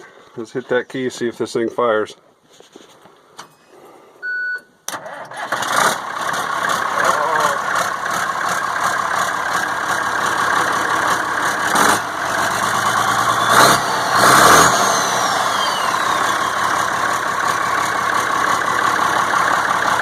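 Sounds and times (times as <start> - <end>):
diesel engine idling: 5.1 - 20.0.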